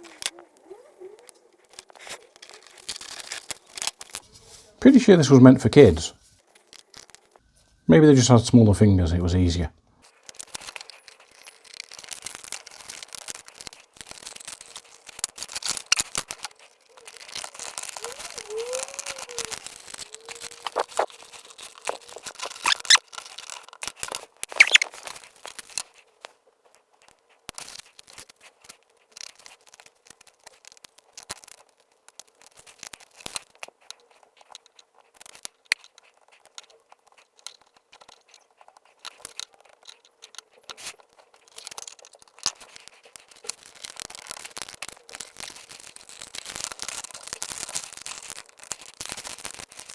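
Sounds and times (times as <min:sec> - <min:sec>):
plastic parts clicking: 0:00.0 - 0:00.6, 0:10.2 - 0:25.9, 0:29.1 - 0:49.9
scratchy rustling: 0:00.0 - 0:07.8, 0:09.5 - 0:49.9.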